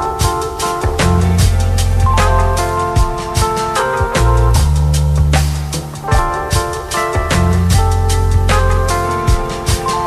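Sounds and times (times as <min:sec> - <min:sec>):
background music with drum beat: 0:00.0 - 0:10.0.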